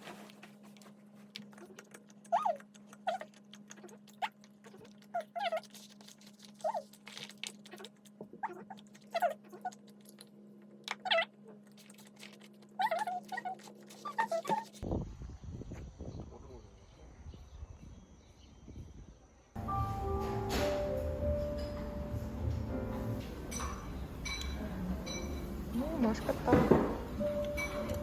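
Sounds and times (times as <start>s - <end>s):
small animal squeaking and whining: 1.4s - 10.1s, 10.8s - 14.8s.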